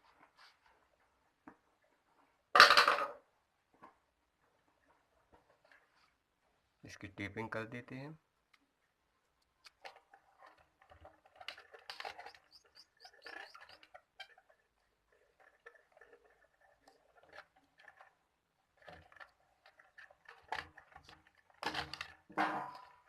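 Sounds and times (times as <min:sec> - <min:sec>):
tape clicking and rustling: 0:09.4 - 0:14.0, 0:18.8 - 0:23.0
tape squeaks: 0:11.4 - 0:14.4.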